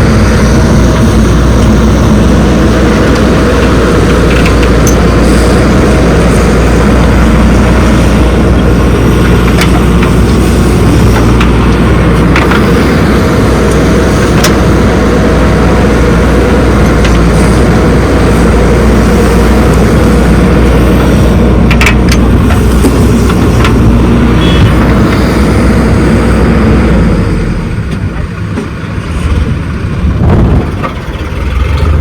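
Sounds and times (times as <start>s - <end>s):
heavy diesel engine running: 0.0s - 32.0s.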